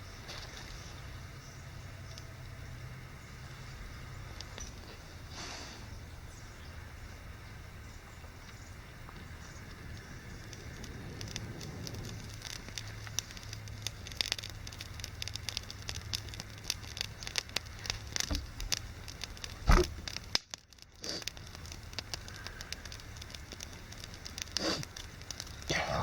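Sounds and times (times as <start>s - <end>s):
campfire crackling and popping: 0.0s - 26.0s
loud thump: 19.6s - 20.0s.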